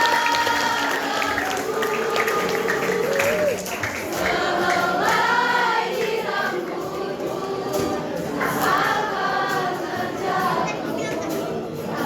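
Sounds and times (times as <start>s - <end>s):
choir singing: 0.0s - 12.0s.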